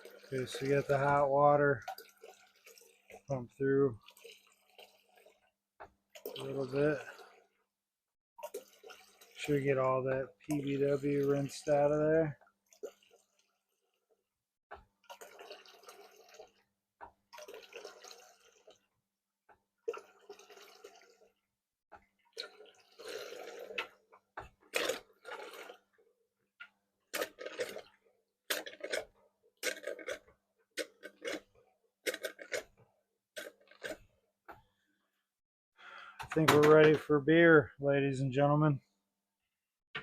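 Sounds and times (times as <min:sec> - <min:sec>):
water gushing from beer tap spout: 0:00.0 - 0:05.5, 0:06.2 - 0:07.5, 0:08.4 - 0:13.9, 0:15.0 - 0:16.6, 0:17.3 - 0:18.8, 0:19.8 - 0:21.4, 0:22.3 - 0:24.0, 0:24.7 - 0:25.9.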